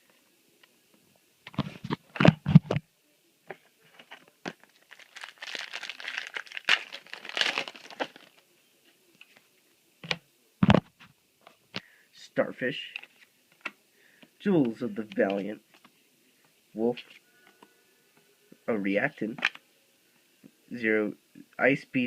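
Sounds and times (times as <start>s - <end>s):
foil pack tearing and crinkling: 4.7s - 8.4s.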